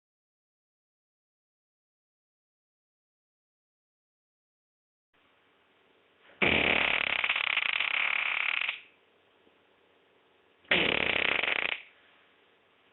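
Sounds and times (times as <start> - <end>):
fart sound: 6.3 - 8.9, 10.7 - 11.9.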